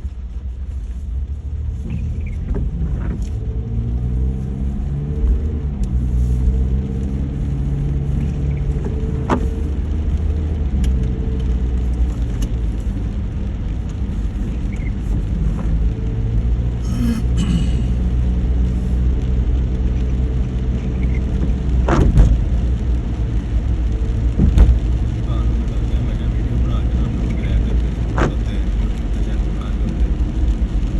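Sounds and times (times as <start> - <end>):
car engine and road noise: 0.0 - 30.9.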